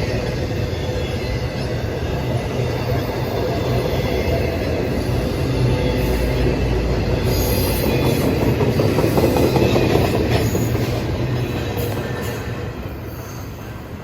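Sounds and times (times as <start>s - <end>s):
train wheels rumbling and clacking: 0.0s - 14.0s.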